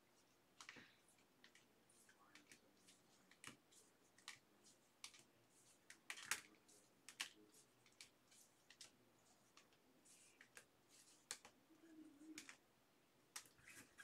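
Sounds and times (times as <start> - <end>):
cards and packaging clicking: 5.9 - 6.5, 7.1 - 8.1.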